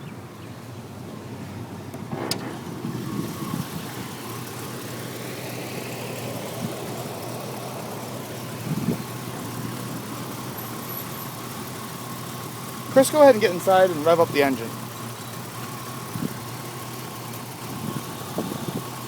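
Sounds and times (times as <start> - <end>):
car engine idling: 0.0 - 19.0
sharp click: 1.9 - 2.6.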